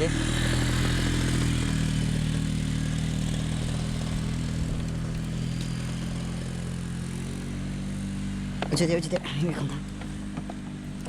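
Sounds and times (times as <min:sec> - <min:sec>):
engine running steadily: 0:00.0 - 0:11.0.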